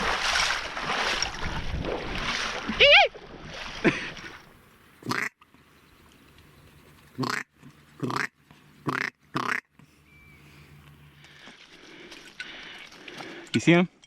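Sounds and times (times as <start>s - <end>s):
duck quacks: 5.0s - 5.4s, 7.2s - 9.7s.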